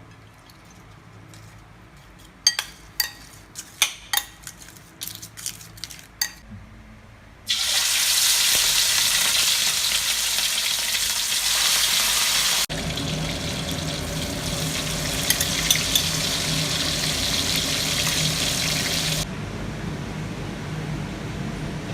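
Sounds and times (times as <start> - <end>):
utensils clinking: 2.1 - 6.4, 15.2 - 16.3
deep-frying sizzle: 7.5 - 19.3.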